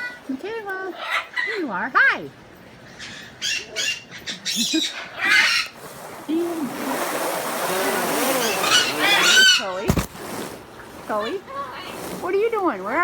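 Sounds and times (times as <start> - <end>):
parrots squawking: 0.8 - 2.2, 2.8 - 5.8, 7.7 - 10.1.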